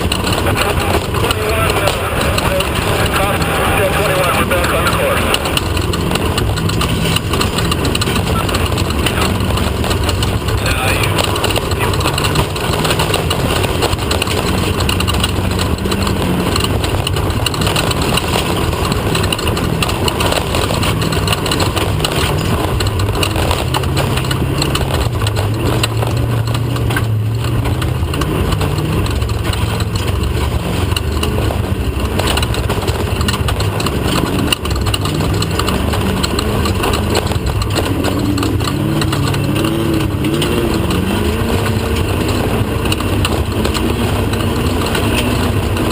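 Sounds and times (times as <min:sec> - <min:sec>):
driving noise rush: 0:00.0 - 0:45.9
engine revving hard: 0:00.0 - 0:45.9.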